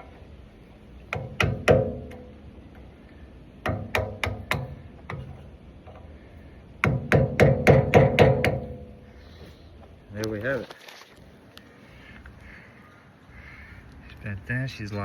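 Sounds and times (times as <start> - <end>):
metal-on-metal tapping with ring: 1.1 - 2.4, 3.6 - 6.0.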